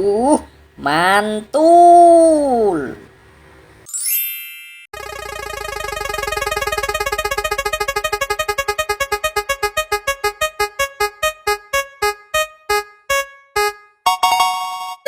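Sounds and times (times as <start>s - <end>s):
synthesized keyboard note: 5.0s - 13.8s.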